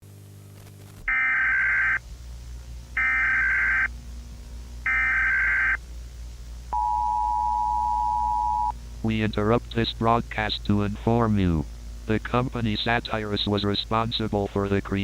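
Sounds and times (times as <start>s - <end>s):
low hum: 0.0s - 15.0s
digital data header bursts: 3.0s - 3.9s, 4.9s - 5.8s
dual-tone attention signal: 6.7s - 8.7s.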